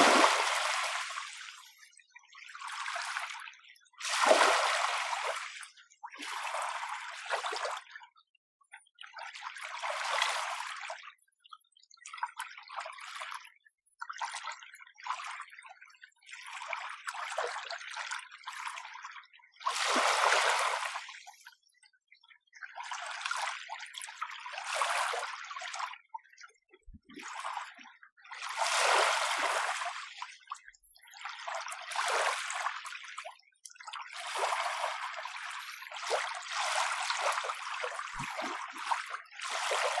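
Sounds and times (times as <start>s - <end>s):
small waves lapping on shore: 0.0s - 1.4s, 4.0s - 5.6s, 19.7s - 21.0s, 28.5s - 30.0s, 36.5s - 40.0s.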